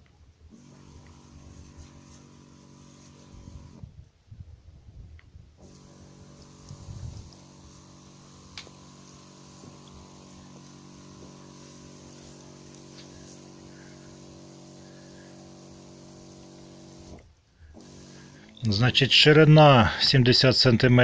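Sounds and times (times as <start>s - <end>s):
tractor engine running: 0.5s - 3.9s, 5.6s - 20.0s.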